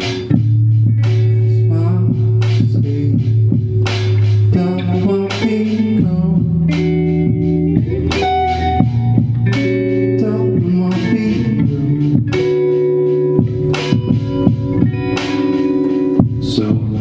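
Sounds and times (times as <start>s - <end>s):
guitar chords: 0.0s - 17.0s
steady bass line: 0.0s - 17.0s
sharp drum hits: 10.6s - 17.0s.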